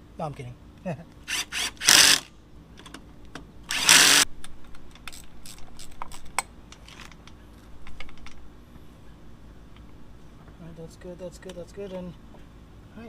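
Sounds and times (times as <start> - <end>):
power tool running down fasteners: 1.3 - 2.3, 3.7 - 4.2.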